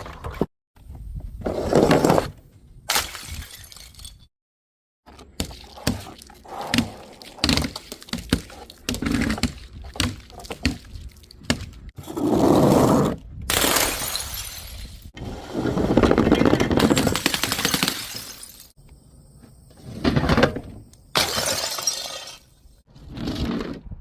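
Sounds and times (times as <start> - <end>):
glass shattering: 13.5 - 15.1, 16.8 - 18.8, 21.1 - 22.5.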